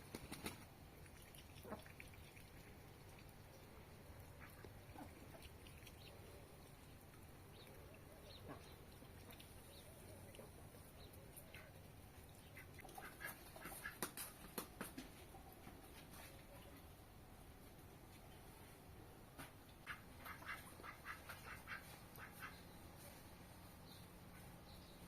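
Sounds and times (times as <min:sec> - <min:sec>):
ducks quacking faintly: 0:01.1 - 0:14.2, 0:19.4 - 0:24.6.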